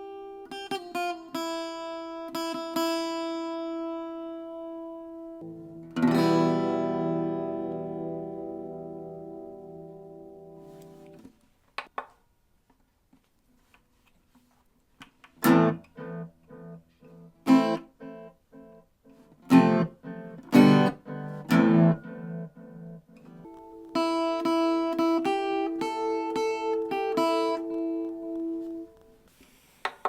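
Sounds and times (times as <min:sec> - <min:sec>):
acoustic guitar picked notes: 0:00.0 - 0:11.2, 0:15.4 - 0:29.4
acoustic guitar strummed chords: 0:00.0 - 0:11.2, 0:15.4 - 0:29.2.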